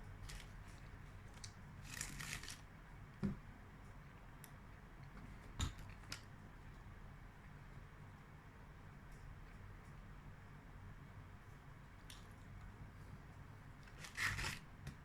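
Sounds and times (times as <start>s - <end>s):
wrapper crinkle: 1.9s - 2.6s, 14.0s - 14.6s.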